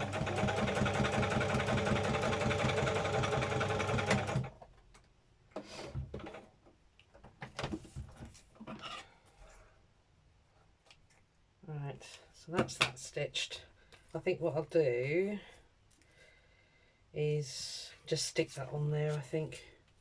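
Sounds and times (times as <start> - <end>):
electric sewing machine running: 0.0 - 4.5.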